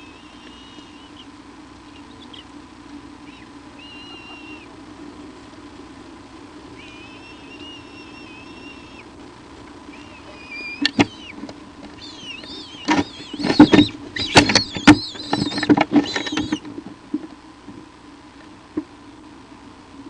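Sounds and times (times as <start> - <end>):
steady low hum: 0.0 - 20.0
high-pitched squeaks and chirps: 1.9 - 2.5, 3.2 - 4.7, 6.8 - 9.1, 9.9 - 11.4, 12.0 - 16.6
sharp clicks and scratches: 10.8 - 17.3.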